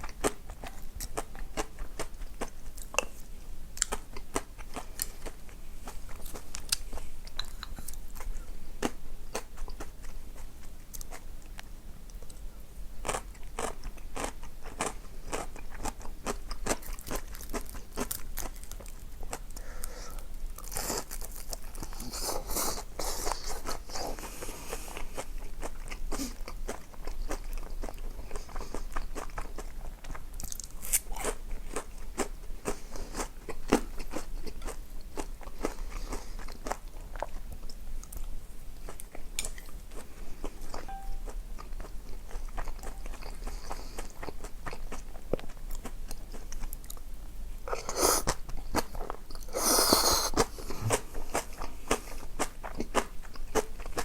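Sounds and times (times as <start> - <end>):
crunching and chewing food: 0.0 - 54.0.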